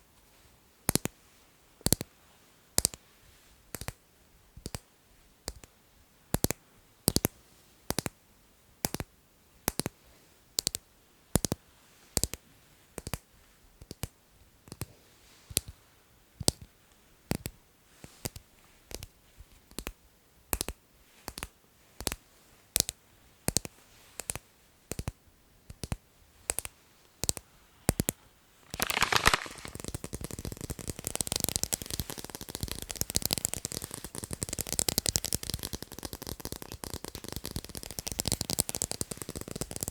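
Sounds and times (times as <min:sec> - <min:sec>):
sharp tapping: 0:28.8 - 0:39.9.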